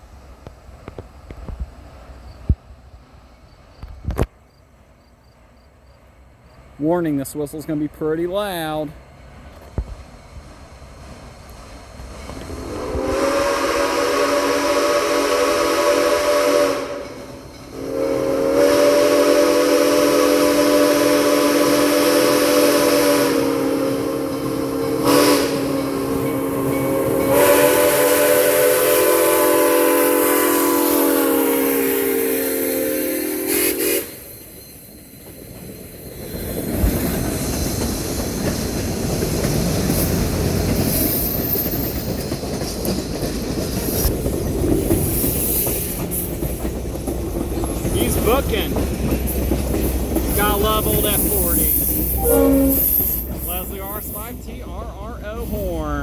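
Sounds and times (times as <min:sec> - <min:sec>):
train rumbling along track: 0:00.0 - 0:56.0
steam locomotive whistle blasts: 0:12.5 - 0:35.1, 0:50.3 - 0:54.4.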